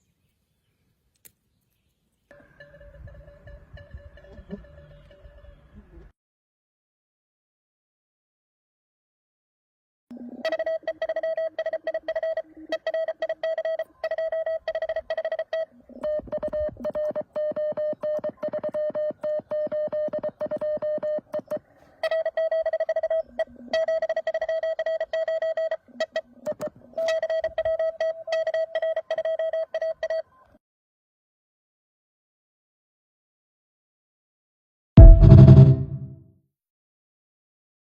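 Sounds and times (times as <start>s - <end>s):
lower-pitched morse code tone: 2.3s - 5.4s, 10.5s - 25.8s, 27.0s - 30.2s
morse code tone: 2.3s - 5.4s, 10.5s - 25.8s, 26.5s - 30.2s.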